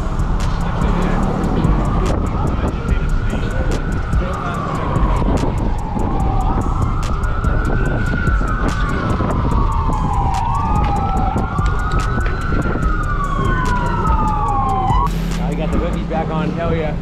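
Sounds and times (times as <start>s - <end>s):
low rumble: 0.0s - 4.3s, 9.4s - 17.0s
emergency siren wailing: 0.0s - 17.0s.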